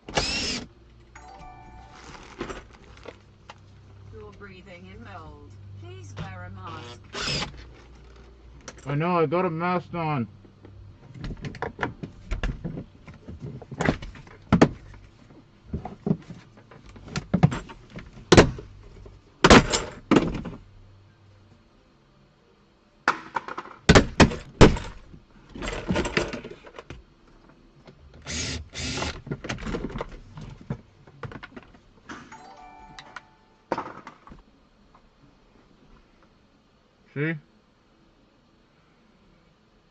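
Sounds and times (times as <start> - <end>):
car parts knocking and clattering: 11.0 - 15.0, 15.7 - 20.6, 29.2 - 32.2.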